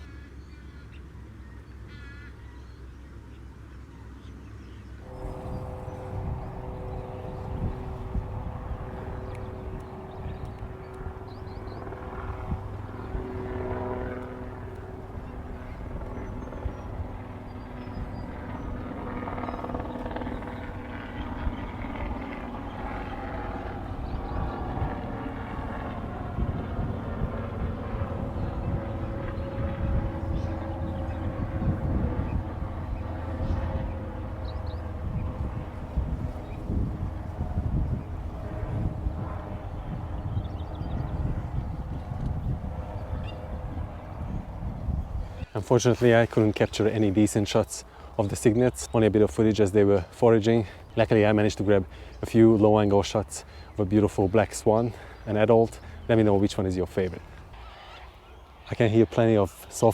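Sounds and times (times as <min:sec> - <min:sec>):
steady low hum: 0:04.5 - 0:59.8
engine droning: 0:04.8 - 0:59.9
waterbird honking: 0:05.0 - 0:10.2.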